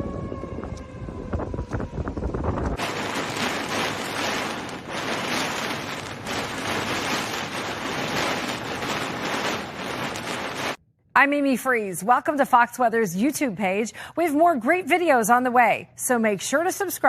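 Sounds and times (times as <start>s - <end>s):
wind rushing over microphone: 0.0s - 10.8s
deep rumble: 0.5s - 10.8s.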